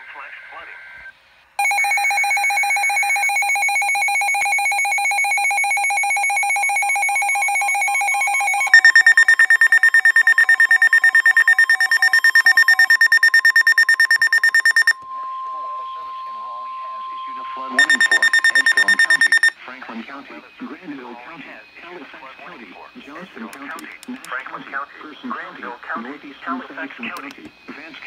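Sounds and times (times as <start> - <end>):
pulsing electronic alarm tone: 1.6 - 19.6.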